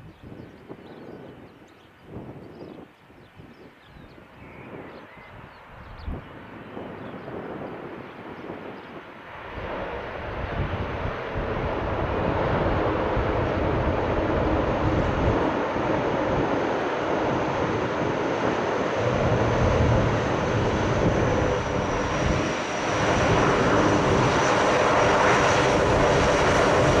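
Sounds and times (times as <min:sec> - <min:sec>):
wind buffeting microphone: 0:00.0 - 0:27.0
turboprop engines droning: 0:06.7 - 0:27.0.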